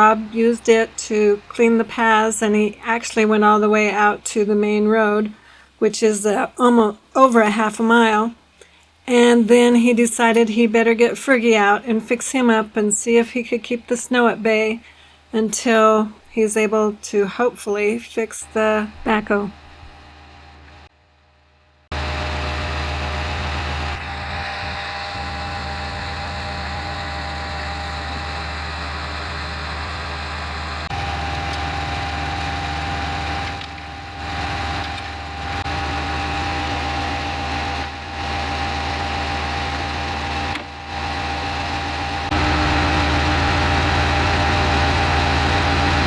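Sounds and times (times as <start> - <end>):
steady engine whine: 0.0 - 5.8, 18.4 - 46.0
engine low rumble: 0.0 - 17.2, 18.2 - 46.0.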